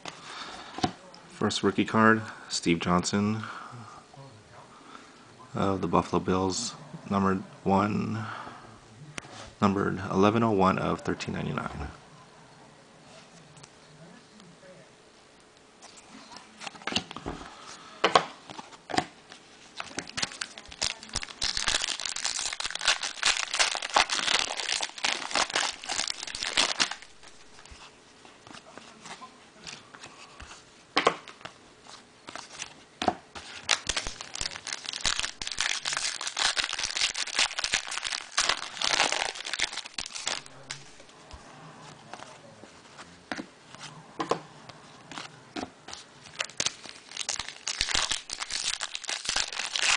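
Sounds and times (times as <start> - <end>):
foil wrappers crinkling and tearing: 19.7 - 27.8, 33.4 - 41.1, 45.9 - 49.9.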